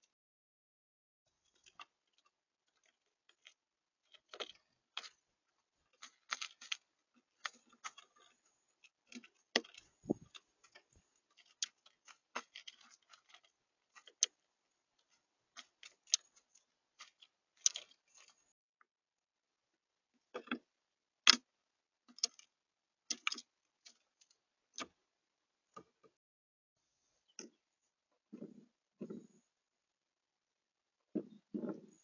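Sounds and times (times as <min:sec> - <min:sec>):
beaks tapping on seed: 0:05.9 - 0:14.4, 0:15.0 - 0:18.4, 0:23.1 - 0:25.0.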